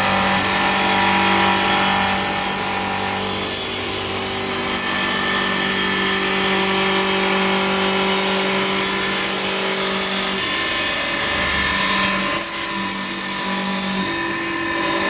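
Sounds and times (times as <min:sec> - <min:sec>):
cutter working wood: 0:00.0 - 0:15.0
lathe motor whine: 0:00.0 - 0:15.0.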